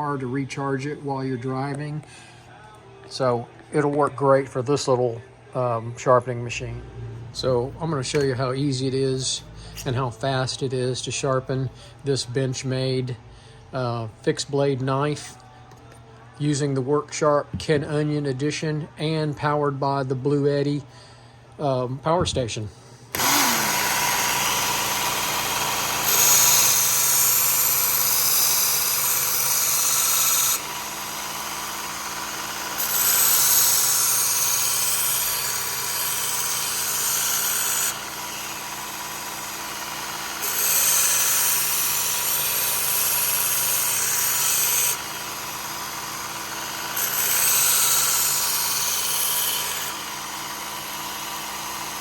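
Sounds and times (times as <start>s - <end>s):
belt sharpener motor running: 23.1s - 52.0s.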